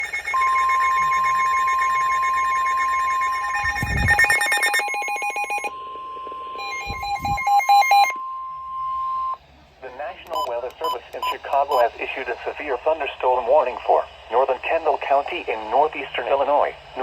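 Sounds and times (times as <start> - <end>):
rapid electronic beeping: 0.0 - 5.8, 10.3 - 13.0
steady warning alarm tone: 0.0 - 9.4, 10.3 - 17.0.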